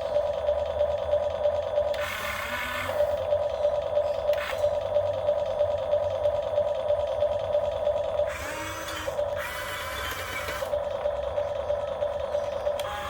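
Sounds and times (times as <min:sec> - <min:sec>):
small electric motor humming: 0:01.9 - 0:03.2, 0:08.2 - 0:11.0, 0:12.6 - 0:13.0.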